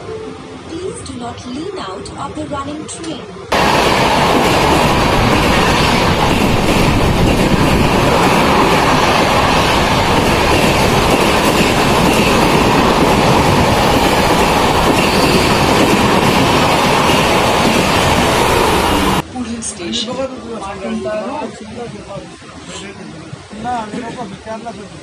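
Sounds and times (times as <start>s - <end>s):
train wheels rumbling on track: 3.5s - 19.2s.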